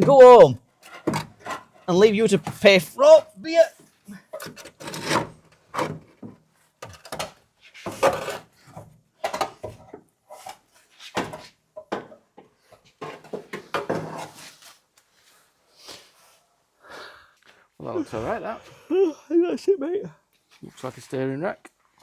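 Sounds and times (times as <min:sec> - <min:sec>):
tools knocking and scraping: 0:00.0 - 0:02.8, 0:04.3 - 0:14.4.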